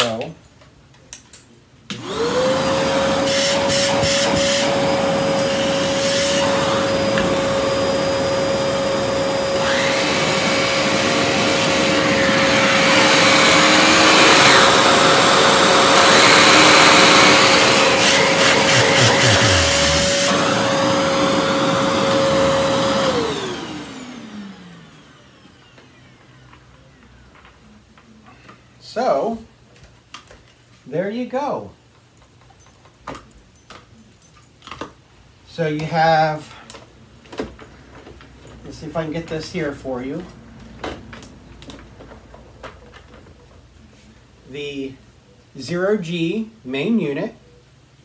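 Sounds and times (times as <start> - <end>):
vacuum cleaner motor whine: 1.9 - 27.2.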